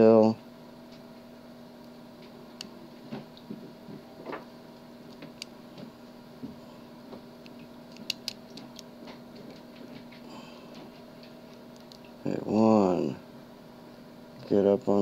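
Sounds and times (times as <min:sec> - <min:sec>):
faint hum: 0:00.0 - 0:15.0.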